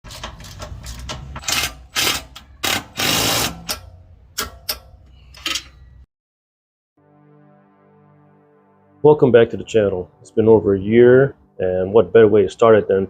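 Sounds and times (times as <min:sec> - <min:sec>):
mechanical clicks and knocks: 0:00.1 - 0:05.8.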